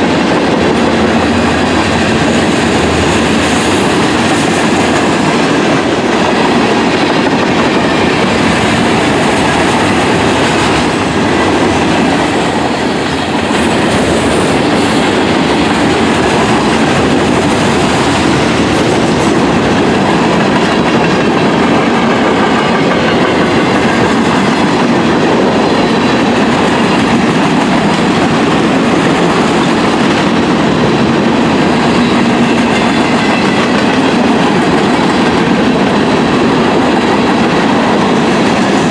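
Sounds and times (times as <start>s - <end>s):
train wheels clattering on rails: 0.0s - 38.9s.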